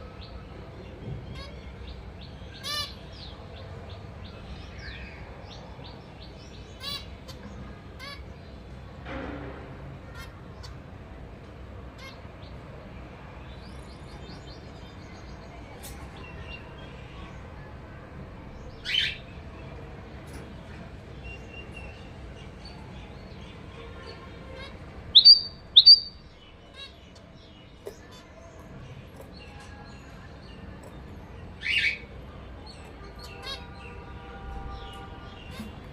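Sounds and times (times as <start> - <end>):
sharp loud finch calls: 2.6 - 3.3, 24.6 - 26.9, 33.2 - 33.7
finches chirping softly: 24.6 - 32.5.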